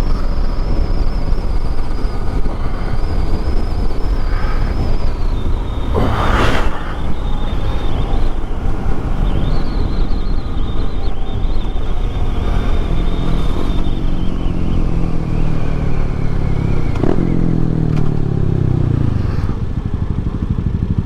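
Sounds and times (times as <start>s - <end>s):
rush of noise: 0.0s - 12.4s
motorcycle engine running: 0.0s - 21.0s
wind rumble on microphone: 0.0s - 21.0s.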